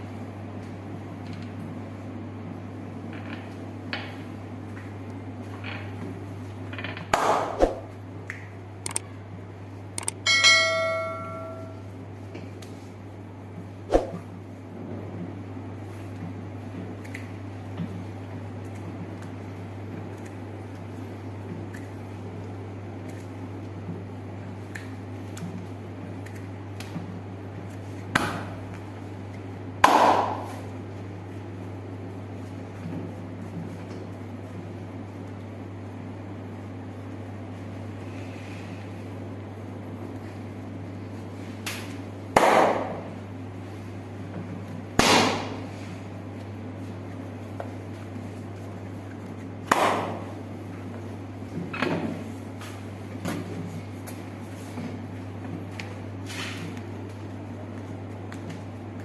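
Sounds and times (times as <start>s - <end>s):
steady low hum: 0.0s - 59.0s
sharp smacks: 7.1s - 7.9s, 45.0s - 45.6s
hand slaps on body: 7.2s - 8.4s.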